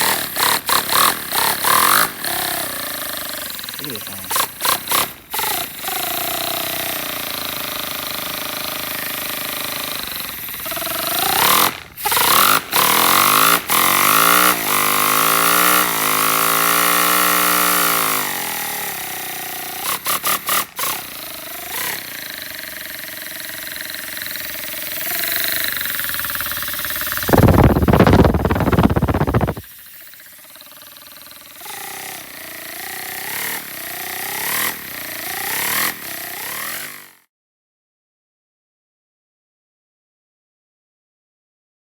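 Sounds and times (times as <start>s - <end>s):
air engine running: 26.3s - 29.6s
loud rush of air: 27.2s - 29.6s.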